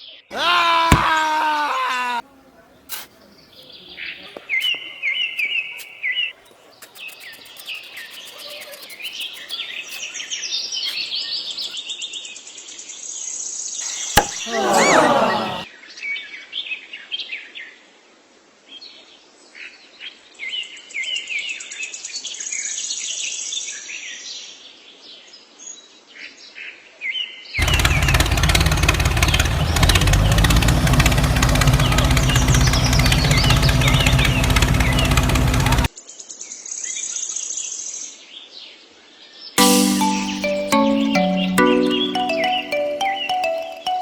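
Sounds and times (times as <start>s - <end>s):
small birds chirping: 1.8s - 11.8s, 31.4s - 35.9s.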